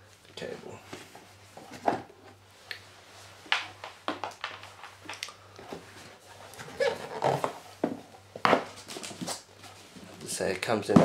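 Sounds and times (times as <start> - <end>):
cardboard and plastic rustling: 3.4 - 11.0.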